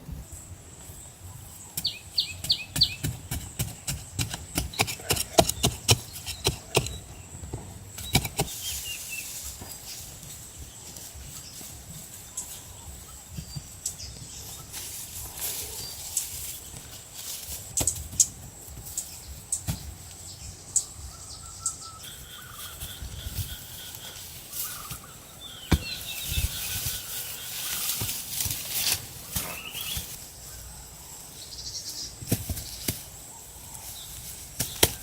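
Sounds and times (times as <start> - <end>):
sharp knocks and taps: 1.8 - 8.6.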